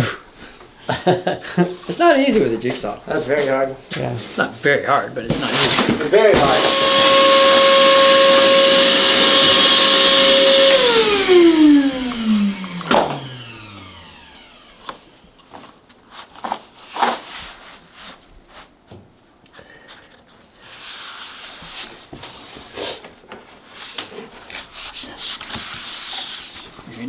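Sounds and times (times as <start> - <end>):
vinyl plank rubbing and scraping: 5.3 - 12.6
jigsaw motor winding down: 6.4 - 15.4.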